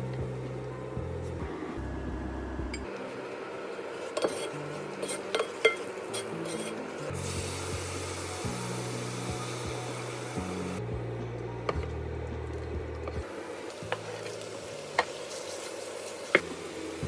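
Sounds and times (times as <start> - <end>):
utensil stirring and scraping pan: 3.9 - 7.0.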